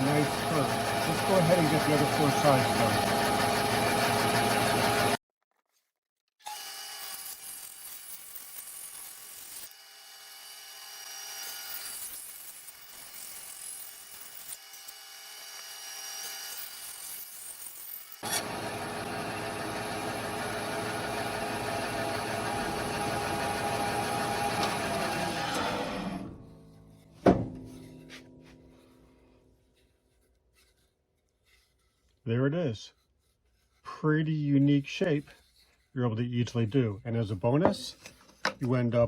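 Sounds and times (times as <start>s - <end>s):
bandsaw cutting wood: 0.0s - 5.2s, 6.5s - 26.7s.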